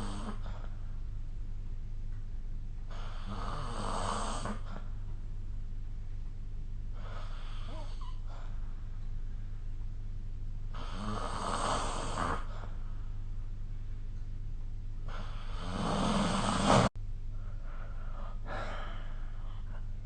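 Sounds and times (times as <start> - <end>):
person snoring: 0.0 - 0.6, 2.9 - 4.9, 7.0 - 8.5, 10.7 - 12.8, 15.0 - 16.9
steady low hum: 0.0 - 20.0.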